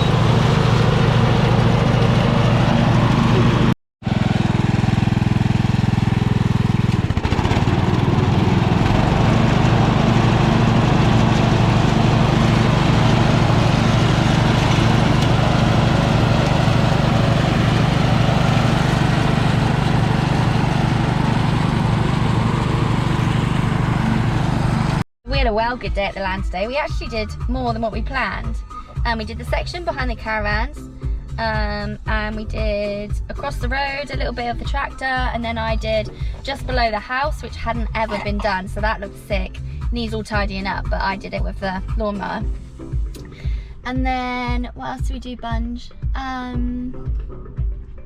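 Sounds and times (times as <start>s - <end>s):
engine running: 0.0s - 25.4s, 31.4s - 44.3s.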